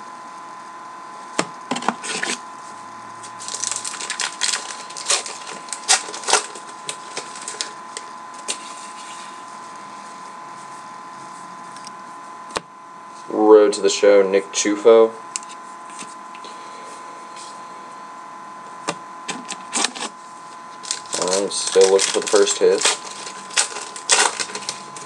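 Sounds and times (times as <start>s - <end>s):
card wrapper crackling: 3.4s - 9.4s, 20.8s - 25.0s.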